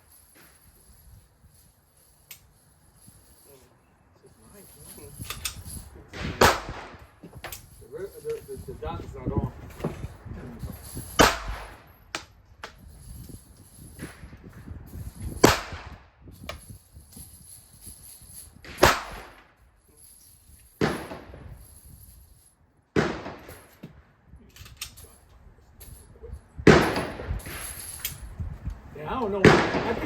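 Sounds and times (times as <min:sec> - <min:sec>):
pistol gunshots: 0:06.2 - 0:07.0, 0:11.2 - 0:11.8, 0:18.7 - 0:19.3, 0:23.0 - 0:23.5, 0:29.4 - 0:30.0.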